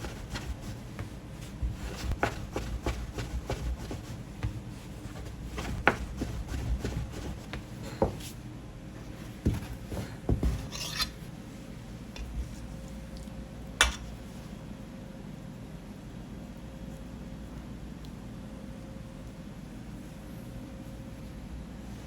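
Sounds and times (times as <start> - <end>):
hands rubbing dough: 0.0 - 12.8.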